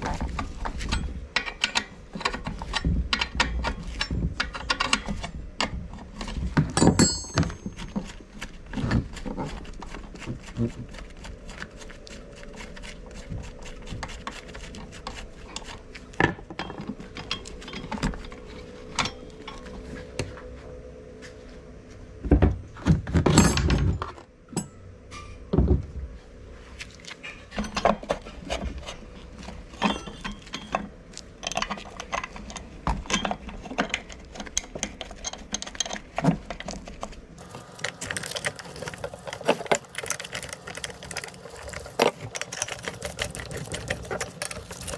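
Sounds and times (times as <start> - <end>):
tools and metal parts clinking: 0.0 - 8.2, 16.2 - 19.8, 23.2 - 25.5, 27.2 - 44.9.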